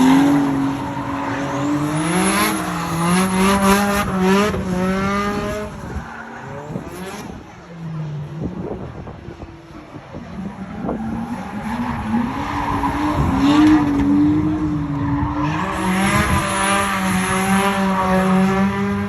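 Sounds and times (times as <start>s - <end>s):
car engine revving hard: 0.0s - 7.5s, 11.7s - 19.0s.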